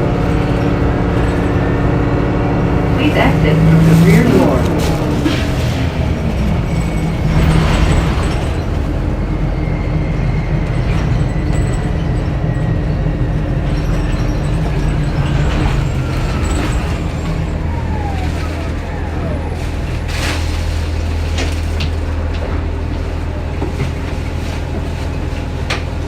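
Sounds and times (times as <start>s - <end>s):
diesel engine humming: 0.0s - 26.0s.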